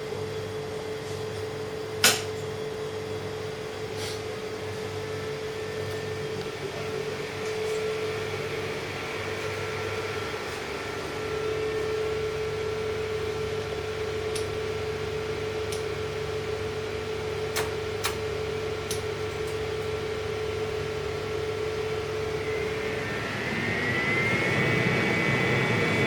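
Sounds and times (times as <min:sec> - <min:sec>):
fan motor humming: 0:00.0 - 0:26.0.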